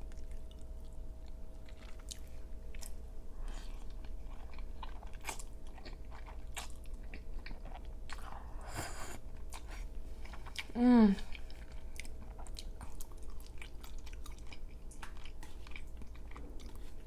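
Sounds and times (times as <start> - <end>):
wet chewing and mouth smacks: 0.0 - 8.4, 9.4 - 17.0.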